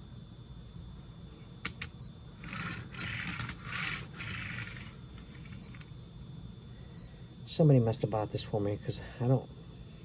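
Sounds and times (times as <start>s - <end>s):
toy car scraping: 2.4s - 5.8s.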